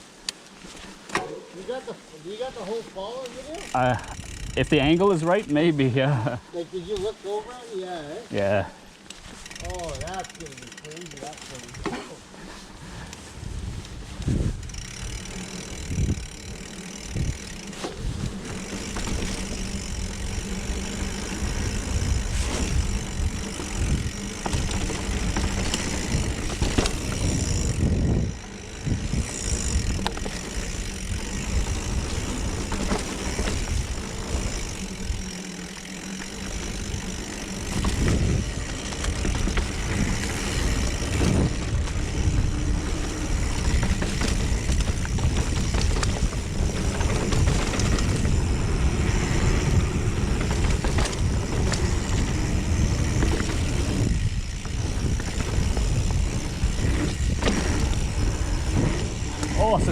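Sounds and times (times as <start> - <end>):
bike tyres rumbling on dirt: 0.0 - 59.9
bike knocks and rattles: 0.6 - 1.6, 9.2 - 12.6, 13.7 - 59.9
wind on the microphone: 12.7 - 15.0, 15.7 - 19.3, 19.9 - 35.3, 37.7 - 59.9.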